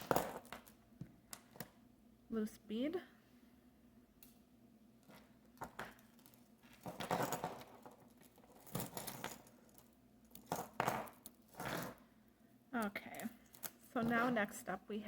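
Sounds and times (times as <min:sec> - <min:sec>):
jewelry pieces clinking: 0:00.0 - 0:01.7, 0:05.0 - 0:12.0, 0:13.1 - 0:14.1.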